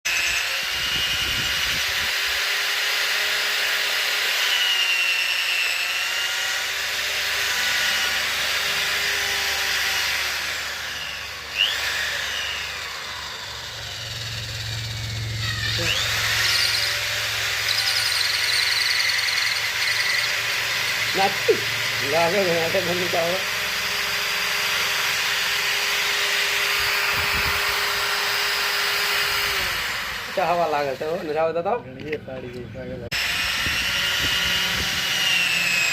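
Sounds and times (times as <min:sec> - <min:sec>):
electric drill whining and grinding: 0:00.0 - 0:35.9
sharp squeal: 0:00.1 - 0:01.5, 0:13.4 - 0:20.4.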